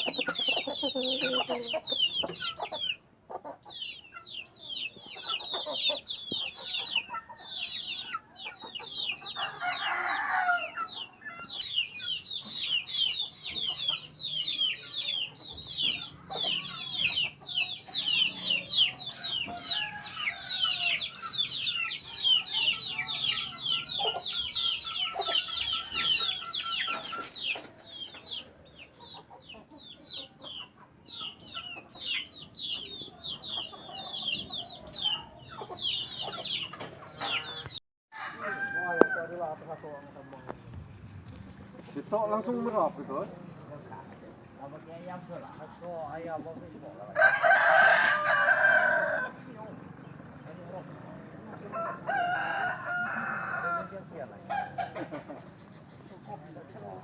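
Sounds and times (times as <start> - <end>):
chickens chirping: 0.0 - 57.0
lower chicken call: 51.8 - 53.9.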